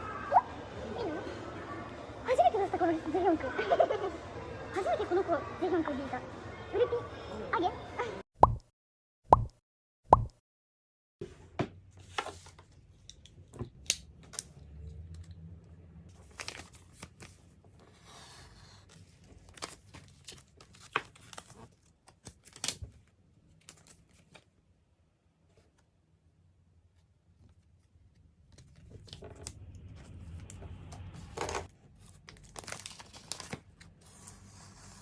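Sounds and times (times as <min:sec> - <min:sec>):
packaging tearing and crinkling: 0:32.2 - 0:33.6.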